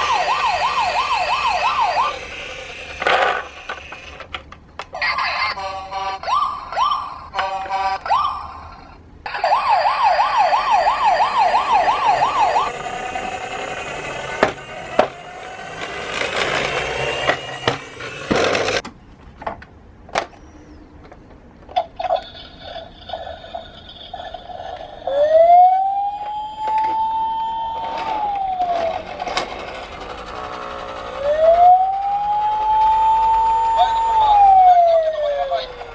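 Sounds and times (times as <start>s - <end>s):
toy siren warbling: 0.0s - 2.8s, 5.0s - 18.0s, 21.8s - 35.9s
rattling noise: 11.2s - 18.9s, 26.6s - 34.0s.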